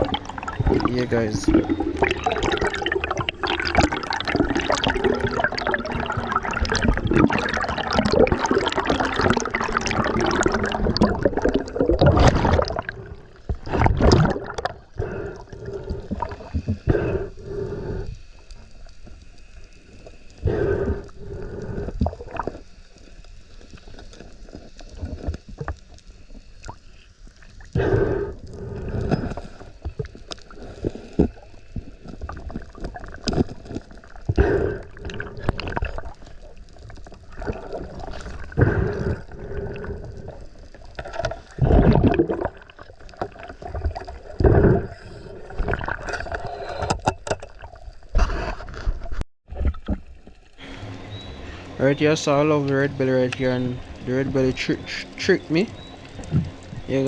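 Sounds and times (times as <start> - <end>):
seawater sloshing and gurgling: 0.0 - 17.0, 27.8 - 49.0, 49.6 - 57.0.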